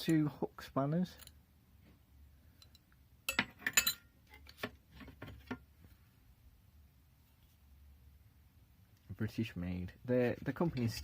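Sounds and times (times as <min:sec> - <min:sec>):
metal spanners clinking: 0:02.6 - 0:04.1.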